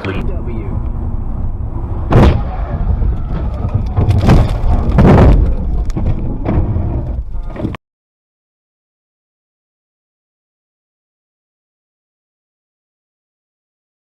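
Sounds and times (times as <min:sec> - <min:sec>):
vehicle engine rumbling: 0:00.0 - 0:07.8
heavy thumps: 0:00.8 - 0:07.8.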